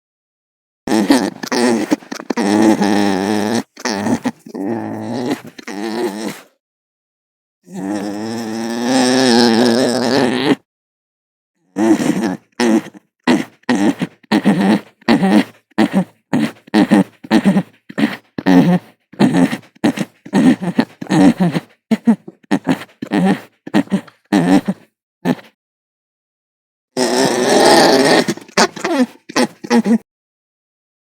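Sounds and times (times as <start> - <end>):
alpaca calling: 0.9 - 6.5, 11.8 - 25.5, 27.0 - 30.0.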